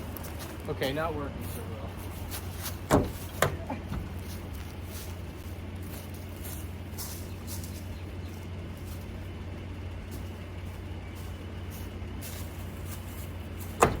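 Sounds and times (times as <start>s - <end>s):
truck engine humming: 0.0s - 14.0s.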